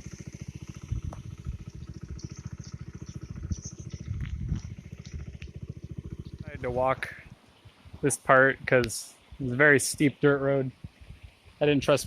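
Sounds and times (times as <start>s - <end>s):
small motorbike engine running: 0.0s - 12.0s
light rattling ticks: 0.6s - 6.6s.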